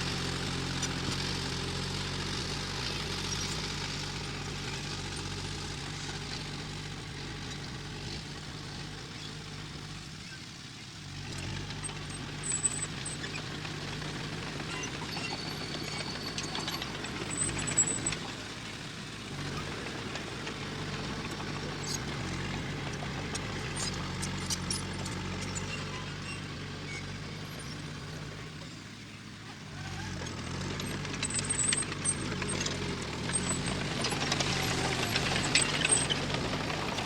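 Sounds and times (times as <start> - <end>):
heavy diesel machinery running: 0.0 - 37.0.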